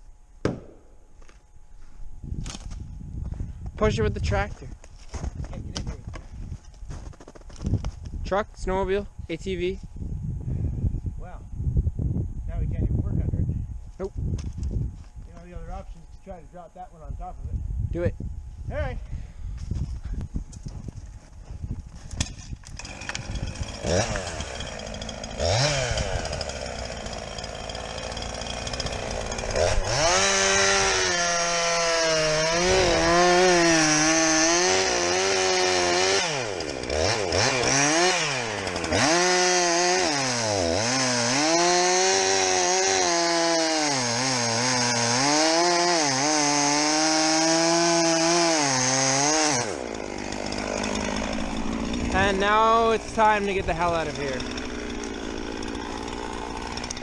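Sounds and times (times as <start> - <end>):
chainsaw revving and cutting wood: 22.2 - 57.0.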